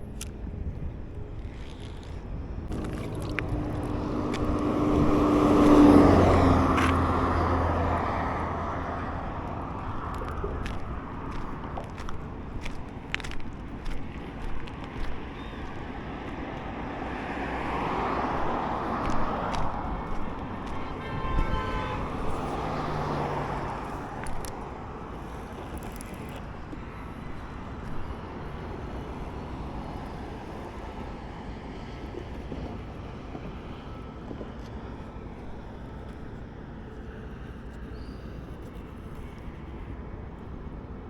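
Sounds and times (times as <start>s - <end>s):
road traffic going by: 0.0s - 41.0s
vehicle passing: 2.7s - 35.3s
vehicle horn toot: 20.7s - 23.3s.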